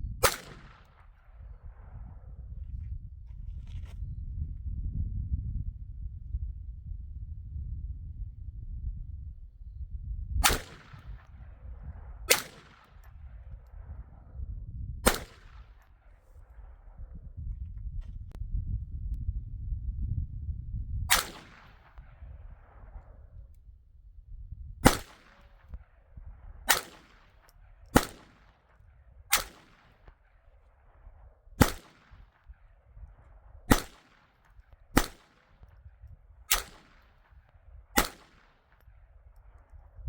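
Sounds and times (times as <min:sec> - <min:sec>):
gunshots with echo: 0:10.4 - 0:11.2, 0:12.3 - 0:13.0, 0:21.1 - 0:22.0, 0:24.8 - 0:25.7, 0:26.7 - 0:27.4, 0:28.0 - 0:28.6, 0:29.3 - 0:30.0, 0:31.6 - 0:32.3, 0:33.7 - 0:34.4, 0:35.0 - 0:35.6, 0:36.5 - 0:37.3, 0:38.0 - 0:38.7.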